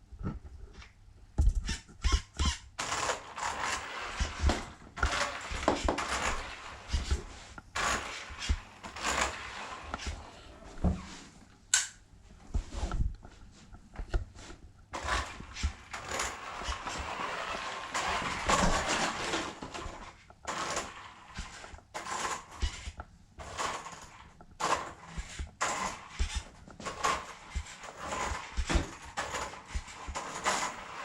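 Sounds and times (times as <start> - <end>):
toy quad bike motor running: 2.1 - 7.2, 7.8 - 10.2, 15.0 - 31.0.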